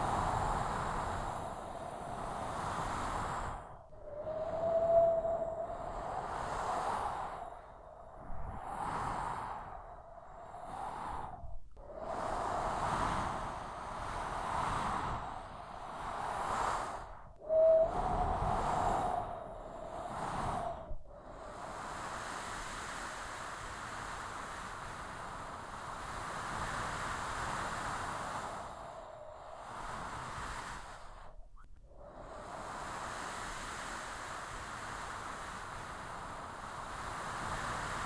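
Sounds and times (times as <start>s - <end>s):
storm wind gusting: 0.0s - 8.7s, 17.5s - 21.0s
whistling tone: 4.0s - 8.2s, 17.4s - 21.0s.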